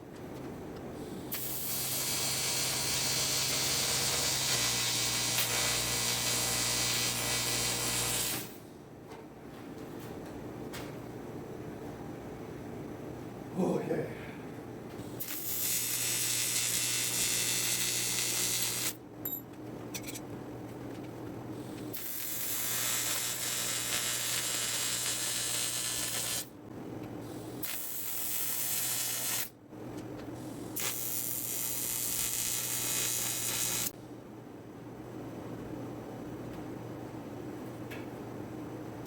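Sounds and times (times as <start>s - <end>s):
welding arc hissing: 1.3s - 8.6s, 15.2s - 19.0s, 21.9s - 26.6s, 27.6s - 29.5s, 30.7s - 33.9s.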